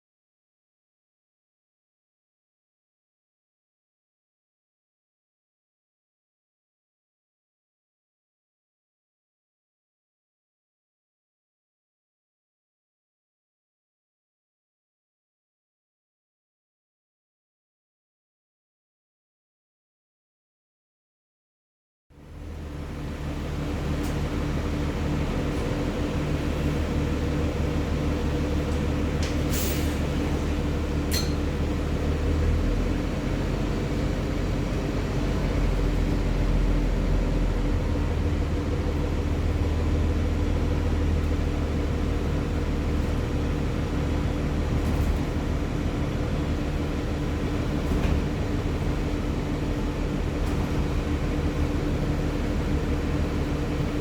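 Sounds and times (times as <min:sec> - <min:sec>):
bus engine droning: 0:22.2 - 0:54.0
brief hissing or clinking: 0:29.5 - 0:30.1.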